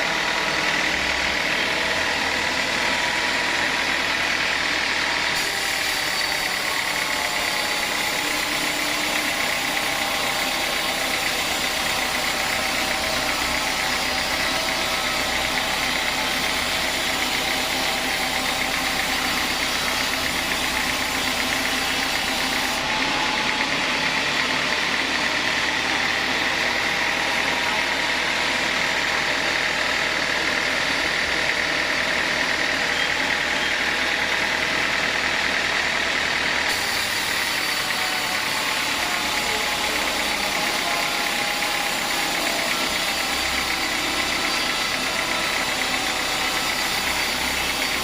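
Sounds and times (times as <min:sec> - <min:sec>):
engine hum: 0:00.0 - 0:48.0
sawmill saw running: 0:00.0 - 0:48.0
blade cutting wood hiss: 0:05.4 - 0:22.8, 0:36.7 - 0:48.0.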